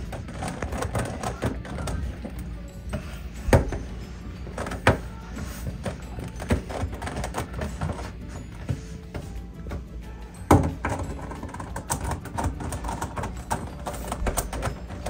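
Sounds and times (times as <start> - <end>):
background music: 0.0 - 15.0
plastic puzzle pieces clicking: 10.8 - 15.0.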